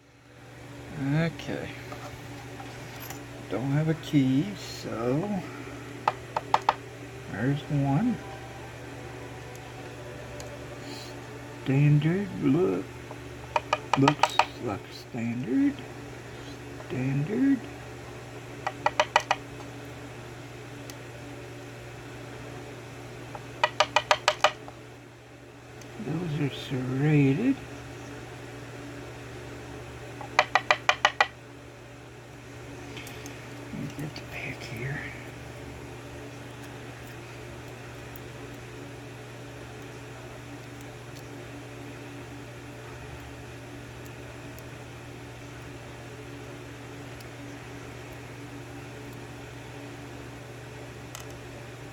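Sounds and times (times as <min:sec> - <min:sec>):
steady low hum: 0:00.0 - 0:51.9
lock parts ticking: 0:18.7 - 0:19.4, 0:23.6 - 0:24.6, 0:30.2 - 0:31.3.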